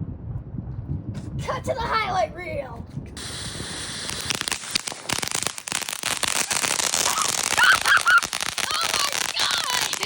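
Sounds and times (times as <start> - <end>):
fireworks crackling: 3.2 - 10.0.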